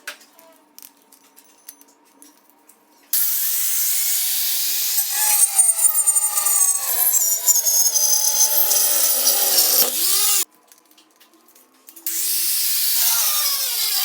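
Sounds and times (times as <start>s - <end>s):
power tool grinding tile: 3.2s - 10.5s, 12.1s - 14.0s.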